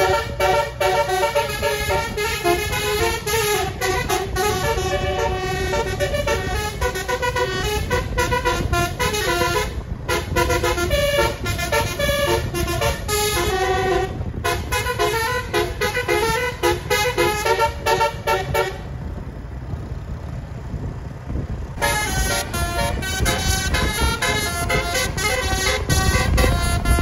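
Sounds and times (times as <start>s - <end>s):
musical bus horn melody: 0.0s - 19.0s, 21.8s - 27.0s
steady low rumble: 0.0s - 27.0s.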